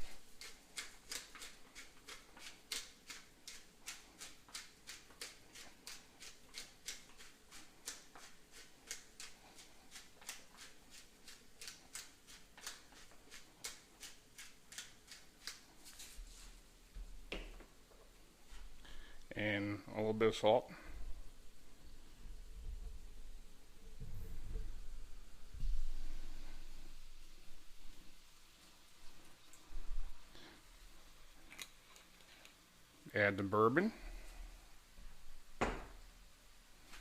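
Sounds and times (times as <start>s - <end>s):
pepper mill grinding: 0.0s - 16.1s.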